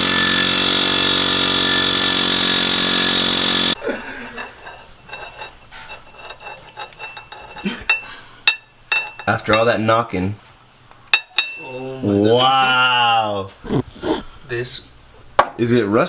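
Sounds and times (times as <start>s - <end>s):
pneumatic air hammer rattling: 0.0s - 3.8s
metallic clinks and knocks: 4.4s - 9.7s, 11.2s - 11.6s.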